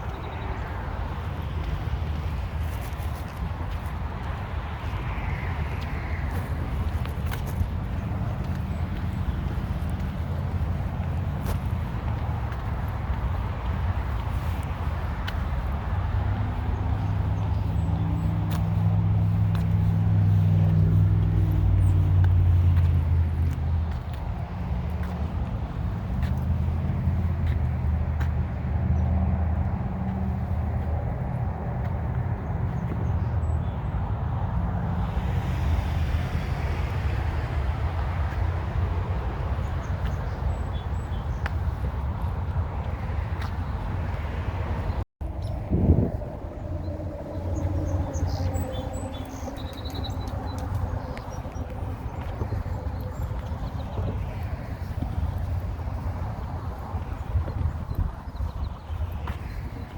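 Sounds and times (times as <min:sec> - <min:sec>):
rush of traffic: 0:00.0 - 0:59.9
engine low steady drone: 0:45.2 - 0:56.0.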